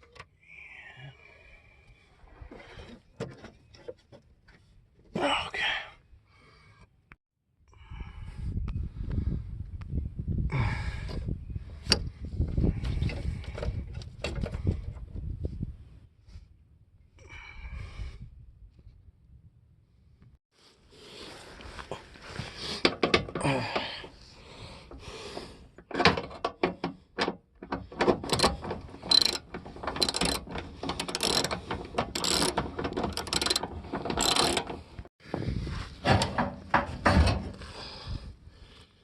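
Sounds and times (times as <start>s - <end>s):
ratchet wrench clicking: 29.1s - 34.7s.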